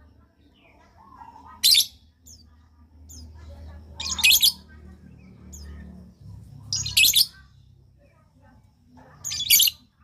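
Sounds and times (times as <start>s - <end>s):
lovebird chirping: 0.5s - 7.5s, 9.2s - 10.0s
lovebird shrill rasping chatter: 1.2s - 2.4s, 4.0s - 4.6s, 6.7s - 7.4s, 9.2s - 9.8s.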